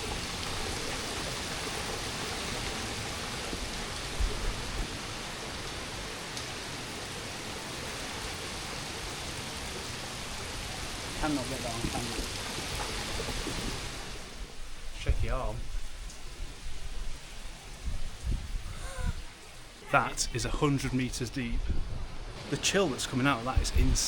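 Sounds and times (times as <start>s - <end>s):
wind buffeting microphone: 10.5s - 22.4s, 23.4s - 24.0s.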